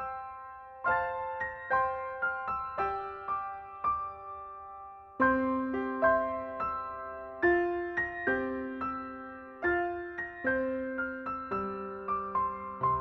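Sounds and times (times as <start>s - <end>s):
soft piano notes and chords: 0.0s - 13.0s.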